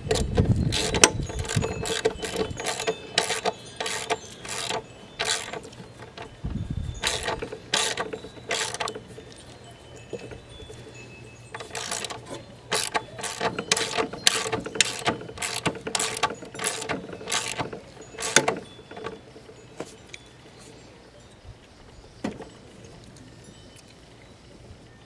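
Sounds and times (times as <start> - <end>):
ratchet wrench clicking: 0.0 - 6.3, 7.0 - 9.0, 11.5 - 19.1.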